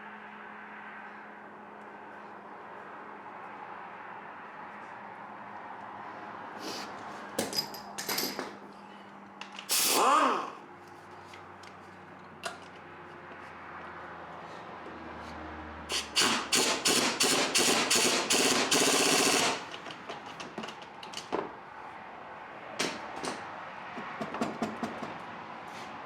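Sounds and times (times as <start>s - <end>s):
knocks and clinks: 7.4s - 8.6s.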